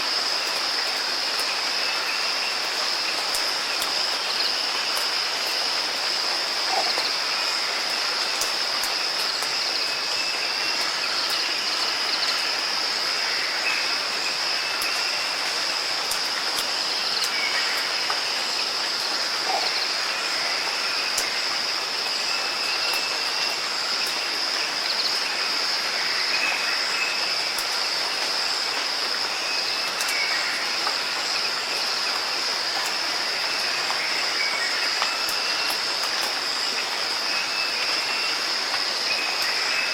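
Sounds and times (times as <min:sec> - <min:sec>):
steady rain hiss: 0:00.0 - 0:39.9
dripping ticks: 0:08.3 - 0:09.6, 0:16.0 - 0:18.2, 0:29.8 - 0:30.2.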